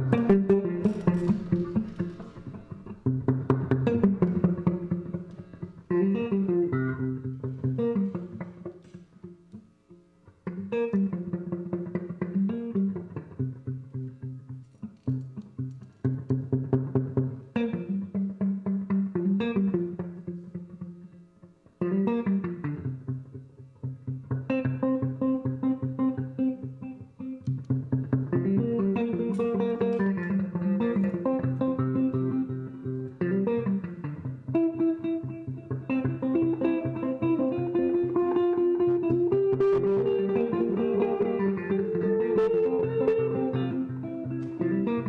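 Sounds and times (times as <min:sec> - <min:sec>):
plucked string solo music: 0:00.0 - 0:09.6, 0:23.9 - 0:45.0.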